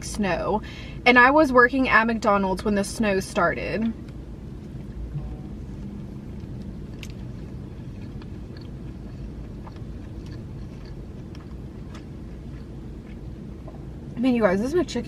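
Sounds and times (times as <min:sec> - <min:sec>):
steady low rumble: 0:00.0 - 0:15.0
person chewing: 0:05.6 - 0:13.8.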